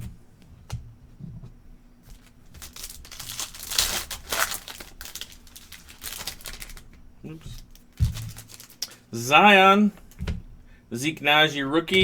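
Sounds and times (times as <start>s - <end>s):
wrapper tearing and crinkling: 2.1s - 9.0s.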